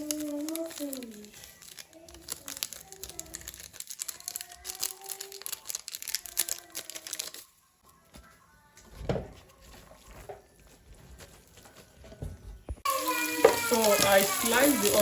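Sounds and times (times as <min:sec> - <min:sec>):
plastic packaging crinkling: 0:00.0 - 0:07.6, 0:12.8 - 0:15.0.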